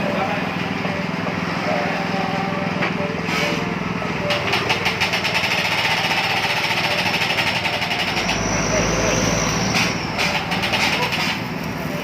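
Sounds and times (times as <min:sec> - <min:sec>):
winch engine running: 0:00.0 - 0:12.0.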